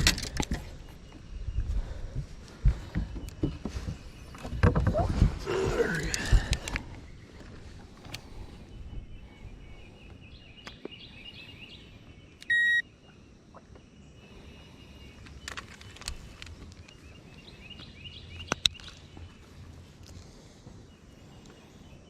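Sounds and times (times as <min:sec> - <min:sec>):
birds chirping faintly: 0:00.0 - 0:22.0
short electronic beep: 0:12.5 - 0:12.8.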